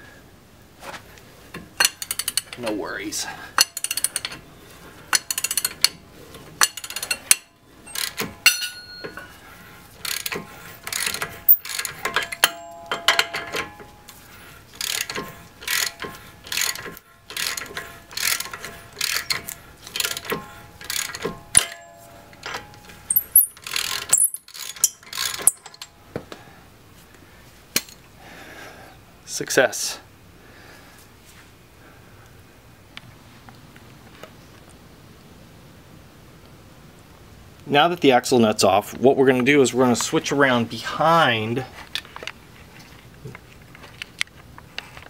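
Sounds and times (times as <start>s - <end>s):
ratchet clicking: 1.8s - 2.6s, 3.6s - 4.4s, 5.1s - 6.0s, 6.6s - 8.3s, 10.0s - 12.6s, 14.8s - 21.9s, 23.1s - 25.8s
light metallic clinks: 6.6s - 9.3s, 21.5s - 26.0s.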